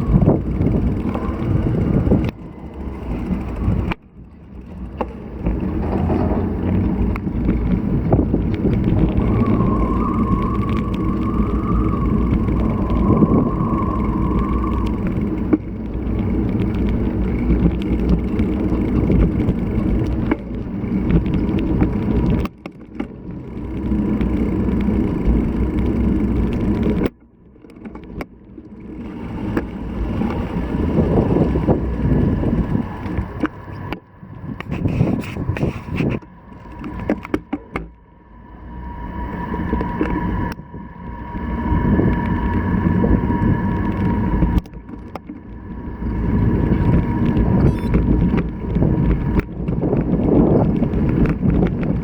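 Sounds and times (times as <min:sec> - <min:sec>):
wind and tyre rumble: 0:00.0 - 0:52.0
faint thin whine: 0:08.1 - 0:20.5, 0:38.1 - 0:49.6.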